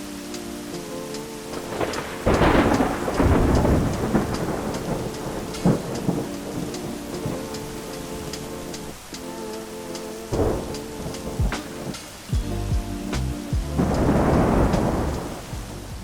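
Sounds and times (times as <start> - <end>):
steady rain: 0.0 - 16.0
thunder rumbling: 1.5 - 9.1, 10.3 - 16.0
sharp thunder crack: 1.6 - 7.5, 13.6 - 16.0.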